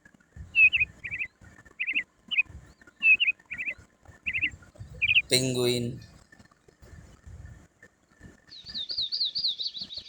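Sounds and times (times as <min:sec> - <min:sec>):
small bird chirping: 0:00.6 - 0:05.4, 0:08.5 - 0:10.0.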